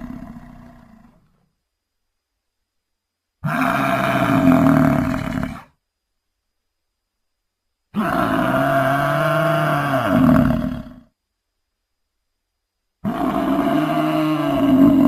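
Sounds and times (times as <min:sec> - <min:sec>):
deep bovine bellow: 0:03.4 - 0:05.7, 0:08.0 - 0:11.1, 0:13.0 - 0:15.0.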